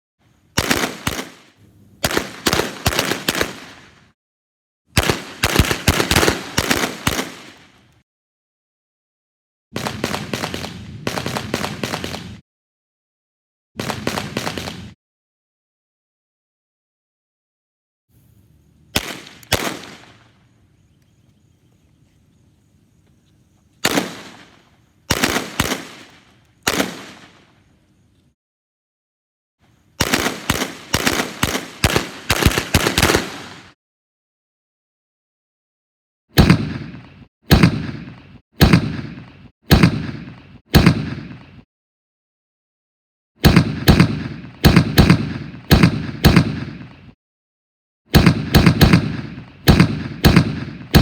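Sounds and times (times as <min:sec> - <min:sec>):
automatic gunfire burst: 0:00.6 - 0:01.4, 0:02.0 - 0:03.8, 0:05.0 - 0:07.6, 0:25.1 - 0:27.3, 0:30.0 - 0:33.8, 0:43.4 - 0:46.9, 0:48.1 - 0:51.0
gunshots with echo: 0:00.6 - 0:04.0, 0:05.0 - 0:07.7, 0:09.8 - 0:12.4, 0:13.8 - 0:15.0, 0:19.0 - 0:20.4, 0:23.8 - 0:27.5, 0:30.0 - 0:33.8, 0:36.4 - 0:41.6, 0:43.4 - 0:47.2, 0:48.1 - 0:51.0.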